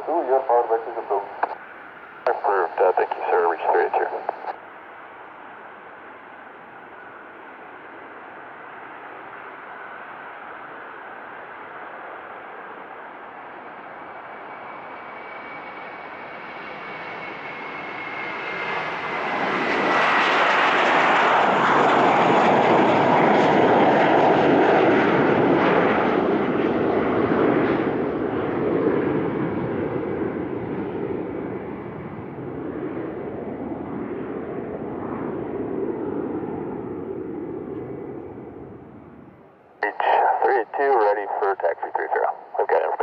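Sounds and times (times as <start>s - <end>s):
jet engines roaring: 0.0s - 4.5s, 16.7s - 43.0s.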